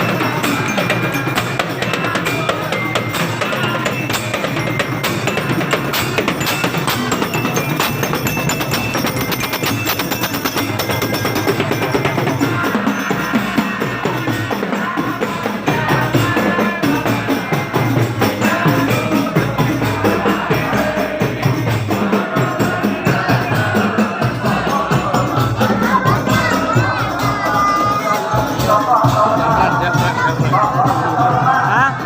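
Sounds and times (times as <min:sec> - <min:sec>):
frame drums beating: 0:00.0 - 0:32.0
jingling tambourines: 0:00.0 - 0:32.0.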